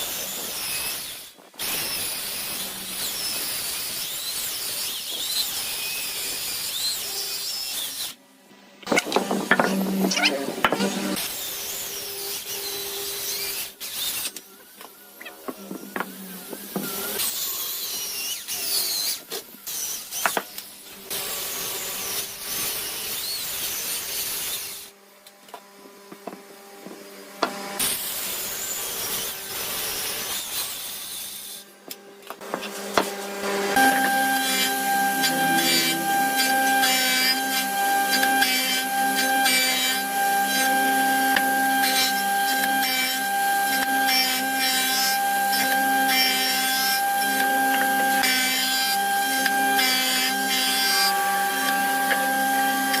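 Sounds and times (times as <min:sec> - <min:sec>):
power tools working wood: 0:08.8 - 0:20.4, 0:32.4 - 0:53.0
tool running with high whine: 0:08.9 - 0:13.5, 0:14.2 - 0:17.6, 0:32.4 - 0:53.0.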